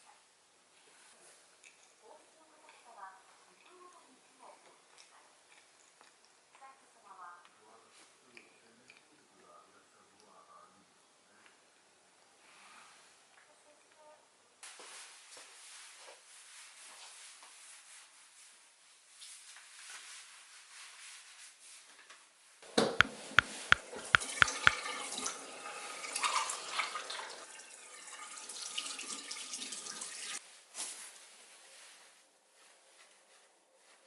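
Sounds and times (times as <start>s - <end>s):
tap water running into sink: 22.8s - 30.4s.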